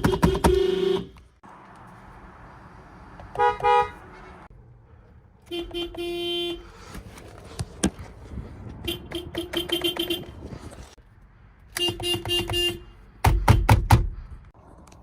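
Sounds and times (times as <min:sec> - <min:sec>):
car horn honking: 0:00.0 - 0:01.2, 0:03.3 - 0:04.5, 0:05.4 - 0:06.7, 0:08.8 - 0:10.4, 0:11.7 - 0:13.0.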